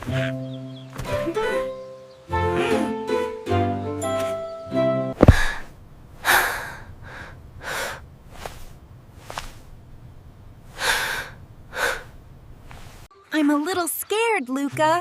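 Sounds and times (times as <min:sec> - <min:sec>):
music cue: 0:00.0 - 0:05.2
girl breathing nervously and gasping: 0:05.2 - 0:08.7, 0:10.7 - 0:12.2.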